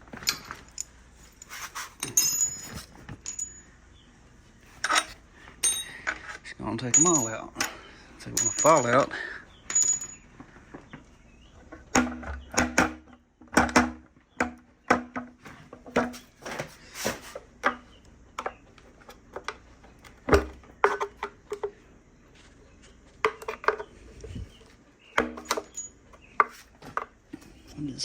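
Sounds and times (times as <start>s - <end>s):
metal engine parts clanking: 0.0s - 3.7s, 4.8s - 10.3s, 25.2s - 26.6s.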